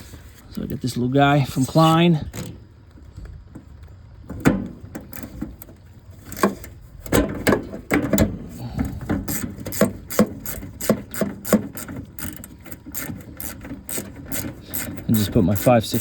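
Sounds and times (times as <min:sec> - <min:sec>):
ratcheting screwdriver clicks: 0:09.3 - 0:16.0.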